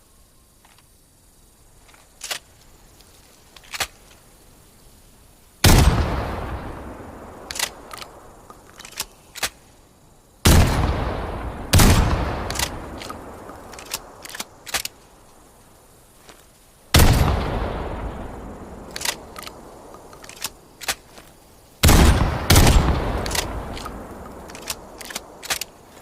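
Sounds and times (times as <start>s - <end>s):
sharp clicks: 1.9s - 4.2s, 7.4s - 9.6s, 12.4s - 15.0s, 18.8s - 21.3s, 22.5s - 25.8s
loud shotgun shots with echo: 21.8s - 23.6s.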